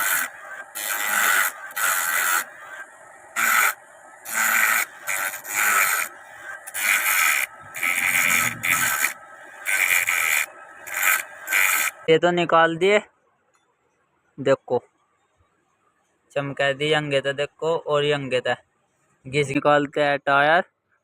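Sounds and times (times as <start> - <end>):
metal rasping strokes: 0.0 - 12.1.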